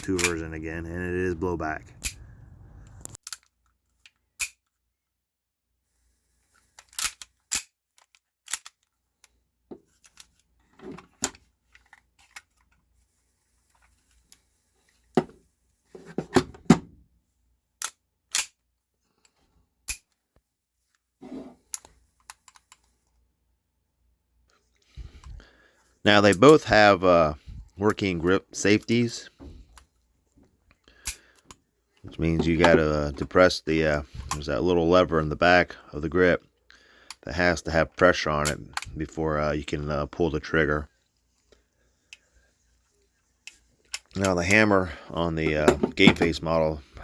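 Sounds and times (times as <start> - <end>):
pistol parts clattering: 0.0 - 0.7, 31.0 - 33.3, 45.4 - 46.4
pistol metal clicks and clacks: 6.8 - 7.7, 8.4 - 8.8, 17.8 - 18.6.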